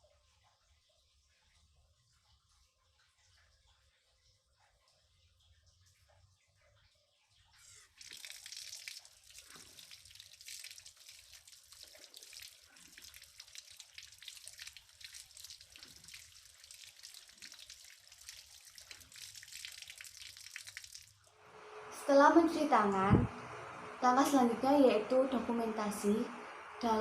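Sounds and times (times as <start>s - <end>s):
tap water running into sink: 8.0s - 27.0s.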